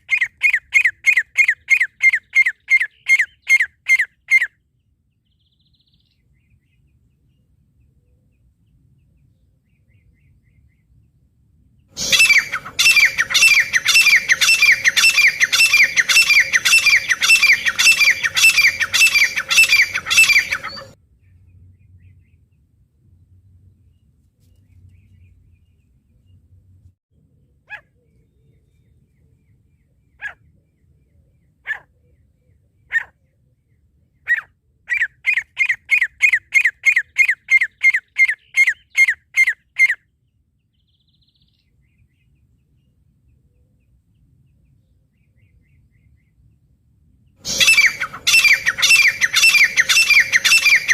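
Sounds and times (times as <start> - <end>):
francolin calling: 12.0 - 21.0, 47.4 - 50.9.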